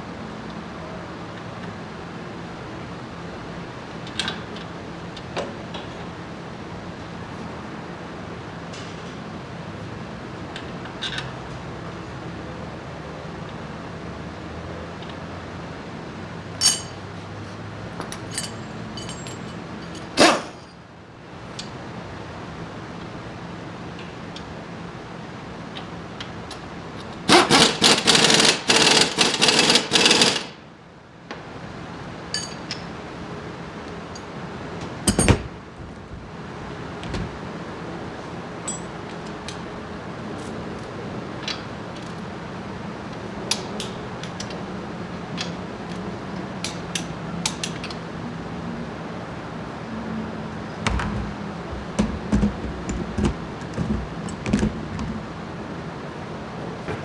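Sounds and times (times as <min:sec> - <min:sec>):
tools clinking on metal: 0:16.6 - 0:17.1, 0:18.0 - 0:20.8, 0:32.3 - 0:32.9, 0:38.6 - 0:38.9.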